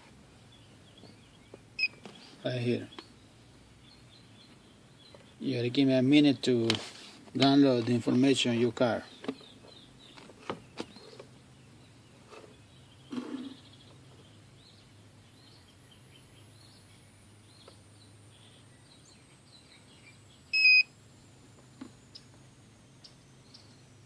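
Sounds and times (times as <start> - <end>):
faint bird chirps: 8.8 - 20.9.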